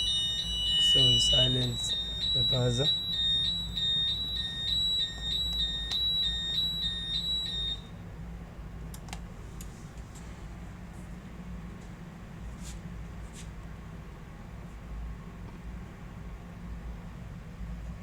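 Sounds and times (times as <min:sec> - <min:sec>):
fire alarm electronic tone: 0:00.0 - 0:07.9.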